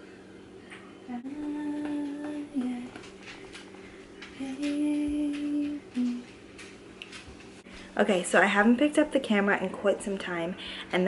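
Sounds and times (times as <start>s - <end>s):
woman humming: 1.0s - 3.0s, 4.4s - 6.3s.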